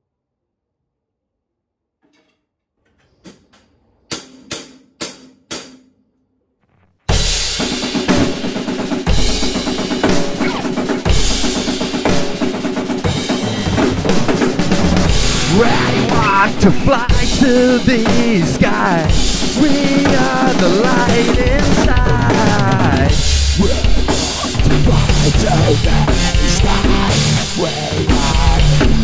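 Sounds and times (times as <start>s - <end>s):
backing track music: 7.1s - 29.0s
drum kit playing a groove: 7.1s - 29.0s
drumstick count-in strokes: 15.0s - 29.0s.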